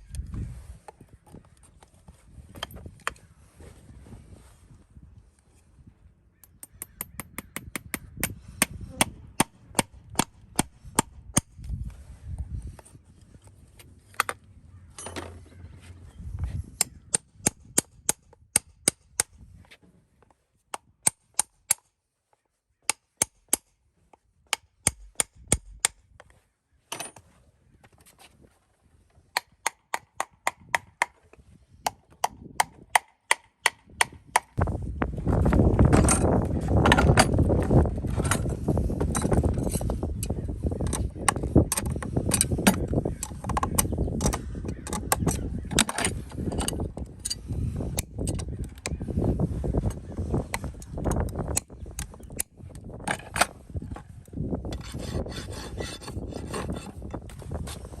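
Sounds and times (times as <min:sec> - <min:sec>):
hammer tapping metal nails: 0:06.4 - 0:11.5
rough continuous noise: 0:52.2 - 0:58.0.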